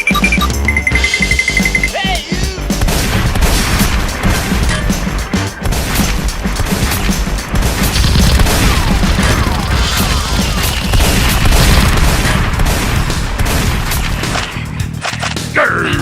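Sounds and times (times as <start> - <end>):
loud background music: 0.0 - 15.9
crash sound effects: 7.9 - 14.2
gunfire sound effects: 7.9 - 14.5.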